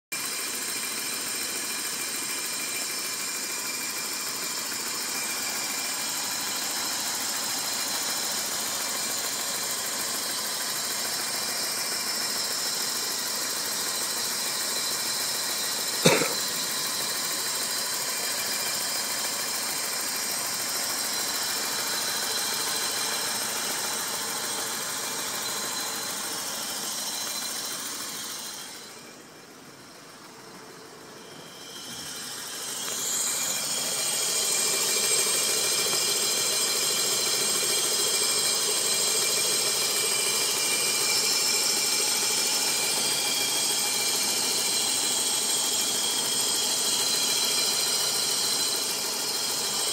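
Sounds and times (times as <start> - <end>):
car engine idling: 0.2 - 49.9
high-pitched whine: 11.0 - 49.9.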